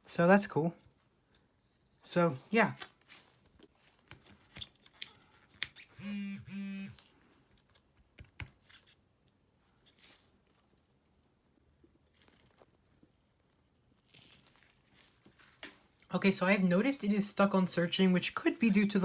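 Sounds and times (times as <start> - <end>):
short low buzzes: 6.0 - 7.0.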